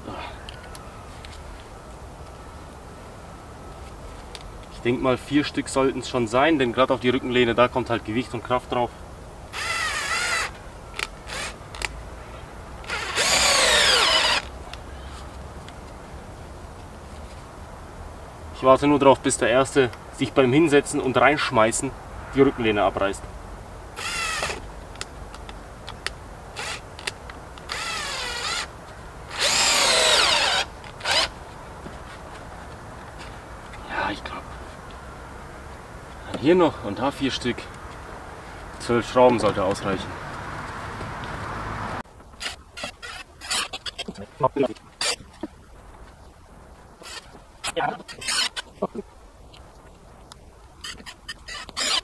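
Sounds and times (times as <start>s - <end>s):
drill-driver driving screws: 9.6s - 11.9s, 12.9s - 14.5s, 24.0s - 24.6s, 26.6s - 27.1s, 27.7s - 28.7s, 29.3s - 31.3s, 51.5s - 52.0s.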